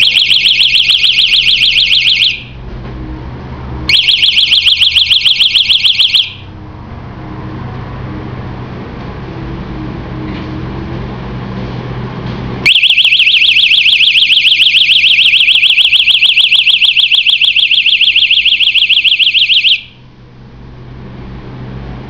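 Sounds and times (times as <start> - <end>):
warbling personal alarm: 0.0 - 2.6, 3.9 - 6.5, 12.6 - 20.0.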